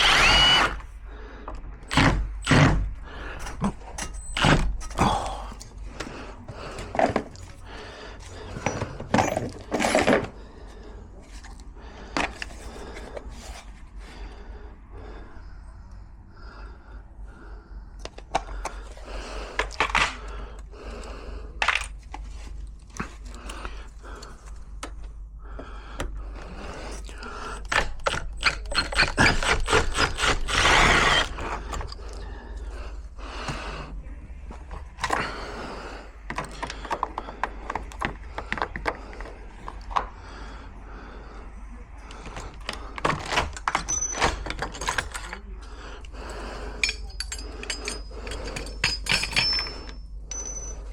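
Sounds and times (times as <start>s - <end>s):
lock parts clicking and rattling: 1.5s - 7.6s, 8.5s - 10.4s, 26.0s - 32.2s, 36.2s - 40.1s, 42.1s - 46.1s, 46.8s - 50.9s.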